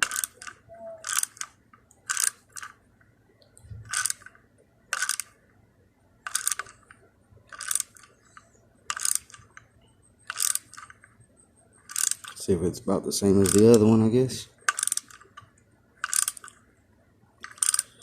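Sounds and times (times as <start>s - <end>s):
ratchet wrench clicking: 0.0s - 1.5s, 2.1s - 2.7s, 3.9s - 4.3s, 5.0s - 5.3s, 6.3s - 6.7s, 7.5s - 8.1s, 8.9s - 9.5s, 10.3s - 11.0s, 11.9s - 12.5s, 13.3s - 13.9s, 14.7s - 15.4s, 16.0s - 16.6s, 17.4s - 18.0s.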